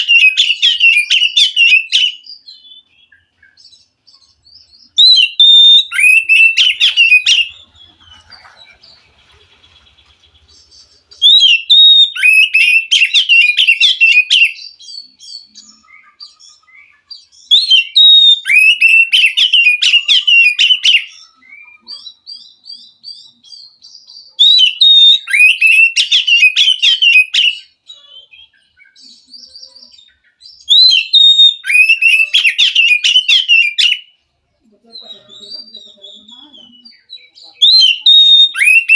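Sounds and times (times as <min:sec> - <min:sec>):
faint soft bird notes: 0:00.0 - 0:17.8
magpie-robin singing: 0:00.0 - 0:38.9.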